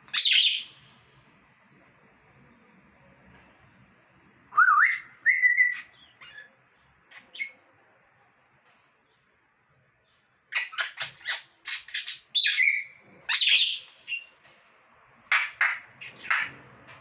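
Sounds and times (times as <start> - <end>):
parrot squawking: 4.5 - 7.6, 10.5 - 14.3.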